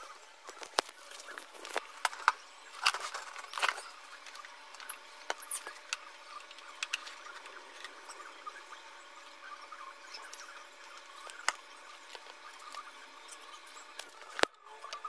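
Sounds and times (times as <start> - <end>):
objects being handled: 0.4 - 8.3.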